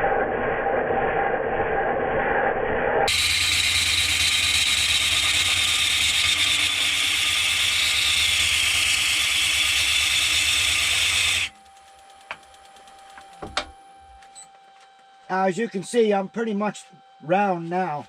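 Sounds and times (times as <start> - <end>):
lathe tool cutting wood: 3.1 - 11.6
lathe humming: 3.1 - 18.0.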